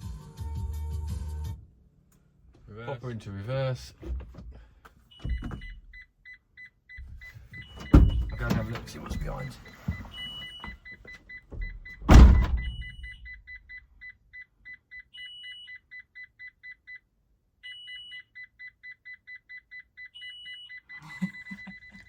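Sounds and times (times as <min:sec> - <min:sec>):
reversing warning beeps: 0:05.1 - 0:17.0, 0:17.6 - 0:22.0
vehicle door thump: 0:05.2 - 0:05.8, 0:07.0 - 0:10.8, 0:11.5 - 0:13.0.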